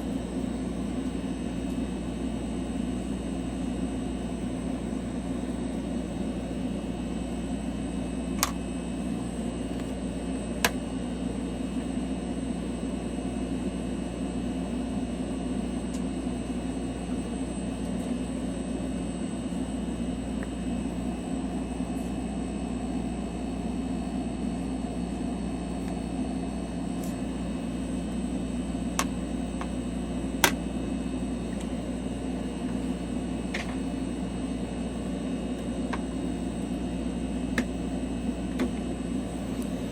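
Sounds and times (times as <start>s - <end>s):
electric machine hum: 0.0s - 39.9s.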